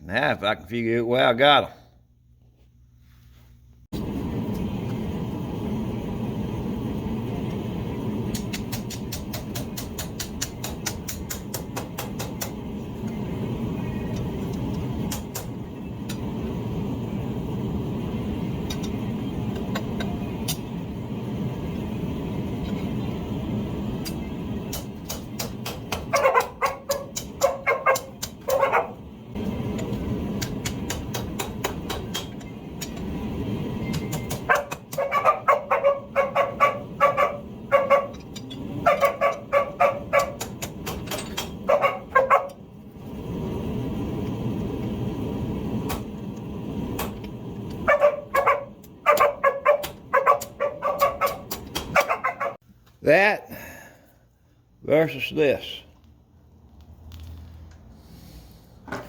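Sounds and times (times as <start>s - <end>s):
sharp clicks: 8.3s - 12.6s
dog barking: 26.0s - 29.0s, 34.4s - 38.2s, 38.8s - 40.5s, 41.6s - 42.6s, 47.8s - 52.6s.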